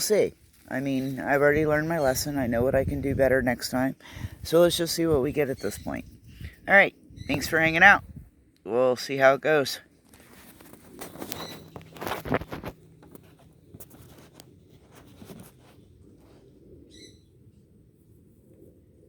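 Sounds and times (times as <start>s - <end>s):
rustling handling noise: 10.0s - 16.5s
high bird chirp: 16.9s - 17.3s.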